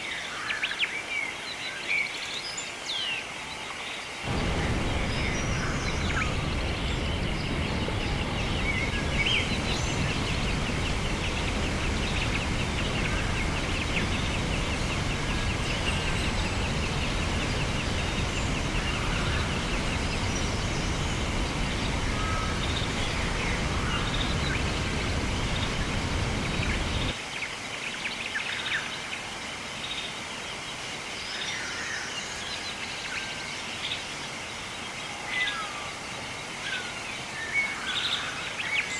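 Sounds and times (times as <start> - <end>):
low steady rumble: 4.3 - 27.2
wild birds calling and trilling: 4.3 - 27.2.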